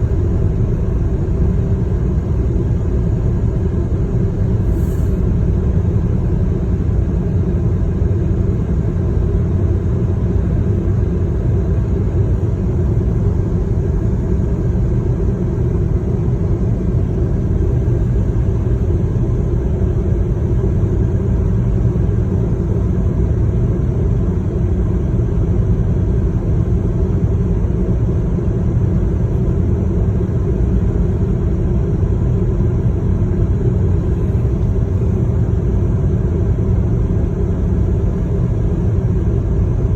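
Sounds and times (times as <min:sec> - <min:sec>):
vehicle rumbling in motion: 0:00.0 - 0:09.4, 0:29.1 - 0:35.9.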